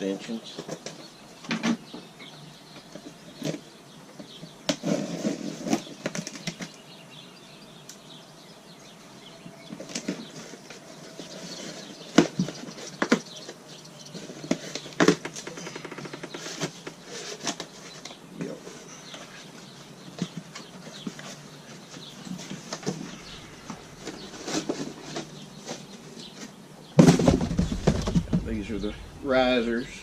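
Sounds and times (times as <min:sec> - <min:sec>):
cardboard rustling and flapping: 0:04.2 - 0:06.8, 0:09.7 - 0:29.0
sharp knocks and clicks: 0:27.0 - 0:29.2.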